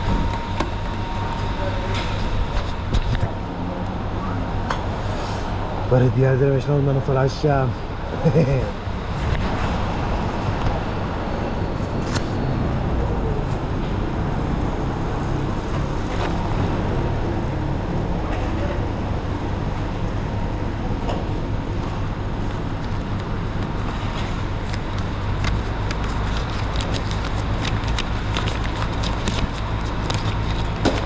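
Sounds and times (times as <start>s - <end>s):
motor humming with whine: 0.0s - 5.9s.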